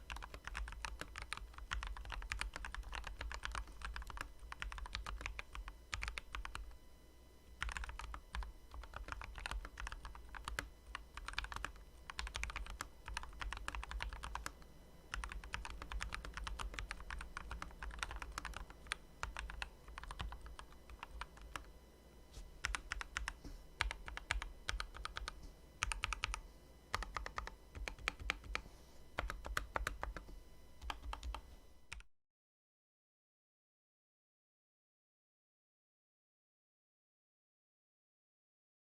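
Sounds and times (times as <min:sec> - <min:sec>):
mechanical keyboard typing: 0:00.0 - 0:06.8, 0:07.6 - 0:21.7, 0:22.6 - 0:28.6, 0:29.2 - 0:32.0.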